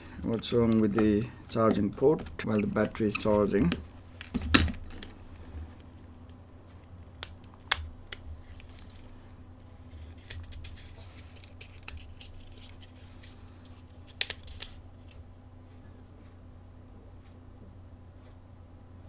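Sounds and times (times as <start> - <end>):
light scraping of plastic: 0.0 - 5.9
phone casing clicks: 0.0 - 9.1, 10.0 - 13.3, 14.1 - 14.8.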